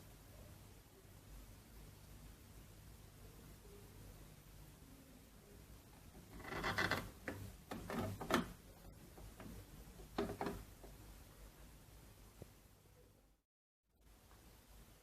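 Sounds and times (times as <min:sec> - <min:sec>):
rubbing and scraping: 0:06.2 - 0:10.7.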